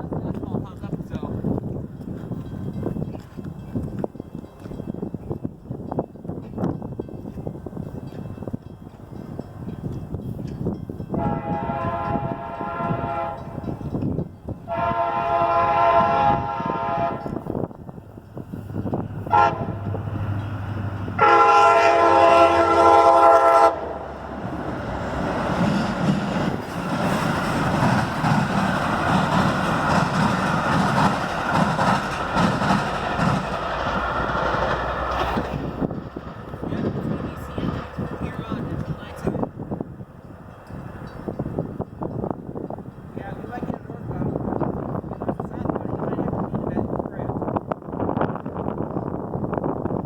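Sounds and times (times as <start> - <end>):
train passing at speed: 0.0 - 50.0
train air horn blasts: 11.1 - 13.8, 14.7 - 17.6, 19.2 - 20.2, 21.1 - 24.2
wheels clacking over rail joints: 24.0 - 46.6.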